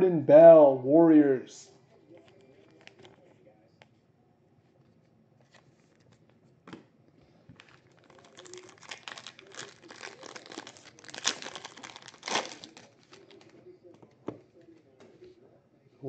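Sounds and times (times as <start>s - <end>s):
wrapper tearing and crinkling: 7.6s - 13.5s.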